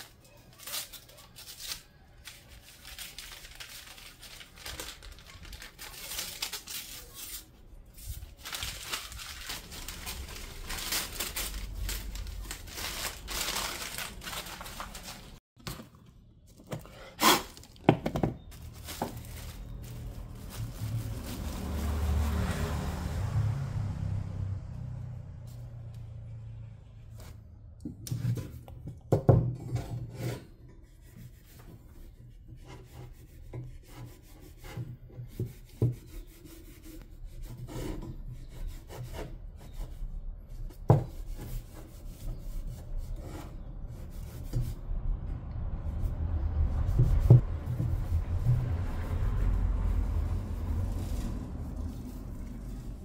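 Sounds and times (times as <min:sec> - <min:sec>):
steady low rumble: 0:44.7 - 0:53.0.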